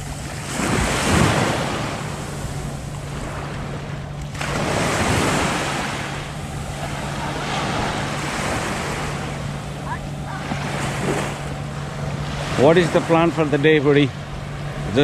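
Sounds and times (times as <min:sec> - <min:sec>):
low hum: 0:00.0 - 0:15.0
waves breaking on beach: 0:00.0 - 0:15.0.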